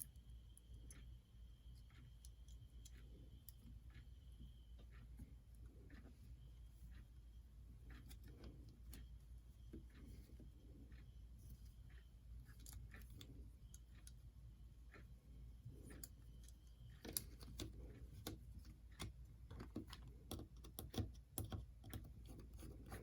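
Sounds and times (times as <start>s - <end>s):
low steady hum: 0.0s - 23.0s
plastic parts clicking and tapping: 15.8s - 23.0s.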